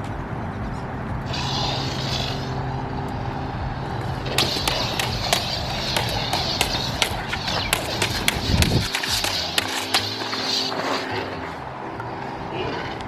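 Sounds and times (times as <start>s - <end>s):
lightsaber swinging whooshes: 4.2s - 10.7s
lightsaber blade clashes: 4.3s - 10.3s.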